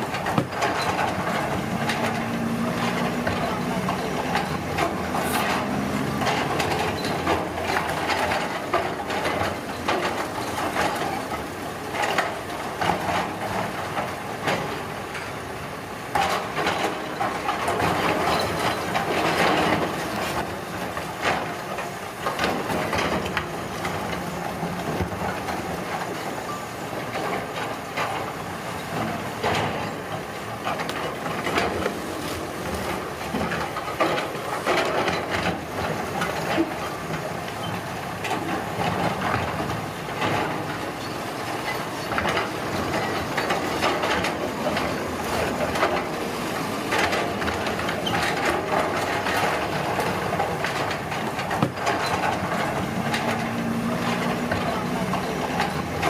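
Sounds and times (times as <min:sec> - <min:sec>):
construction machinery din: 0:00.0 - 0:56.0.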